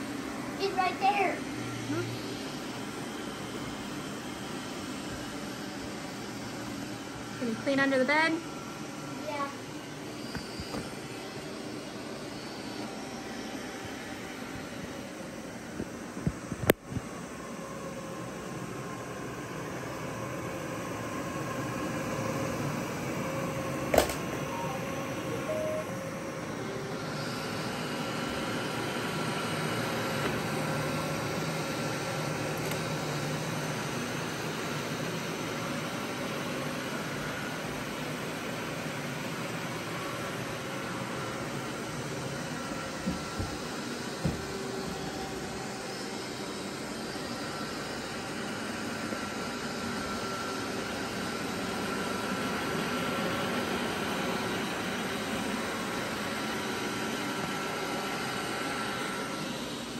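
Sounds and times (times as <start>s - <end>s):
robot vacuum cleaners whirring: 0.0s - 59.9s
held tones: 24.2s - 26.0s.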